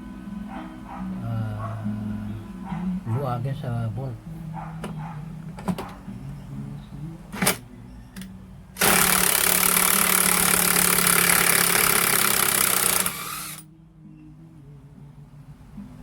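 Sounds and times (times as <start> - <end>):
impact driver rattling: 8.8 - 13.6.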